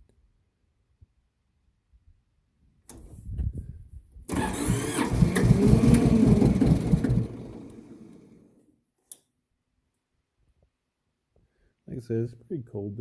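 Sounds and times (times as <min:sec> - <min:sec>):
diesel engine cranking and firing: 0:04.3 - 0:08.6.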